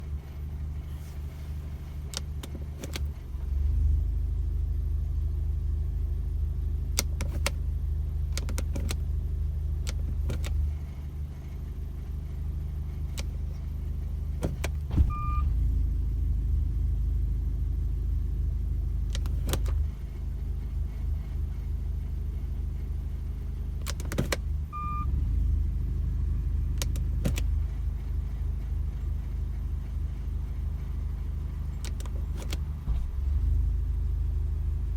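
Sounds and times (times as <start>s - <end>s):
car engine idling: 0.0s - 34.9s
sharp clicks and knocks: 8.4s - 9.0s, 14.4s - 15.2s, 23.8s - 24.4s, 26.8s - 27.6s, 31.8s - 33.0s.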